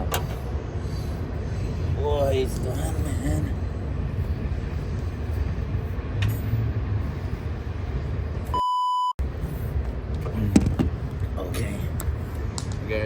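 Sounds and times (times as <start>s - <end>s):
steady low rumble: 0.0s - 8.6s, 9.2s - 13.0s
censor bleep: 8.5s - 9.2s.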